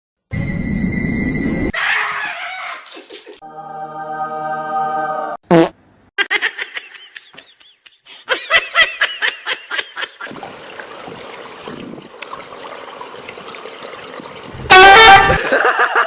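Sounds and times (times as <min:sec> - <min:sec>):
high-pitched laughter: 0:01.8 - 0:03.4, 0:06.2 - 0:10.3, 0:14.7 - 0:16.0.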